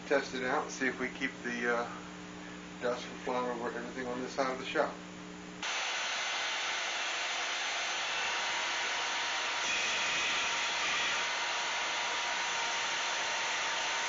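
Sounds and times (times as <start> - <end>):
belt sander running: 5.6 - 14.0.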